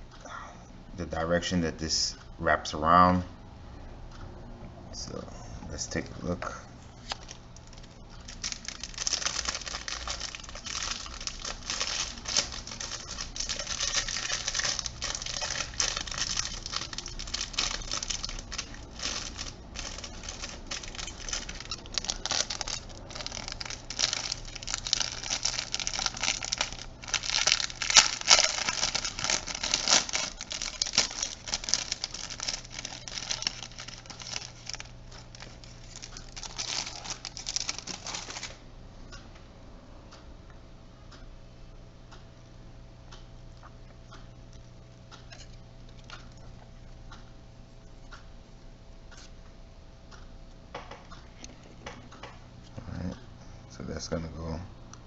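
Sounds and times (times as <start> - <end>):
faint steady hum: 0.0 - 55.0
crinkling plastic parts handled: 7.0 - 38.6.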